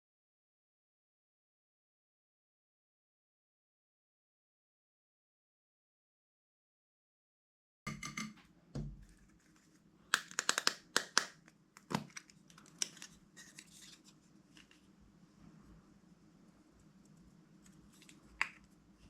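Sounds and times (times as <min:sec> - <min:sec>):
slime clicking and crackling: 0:10.1 - 0:13.0.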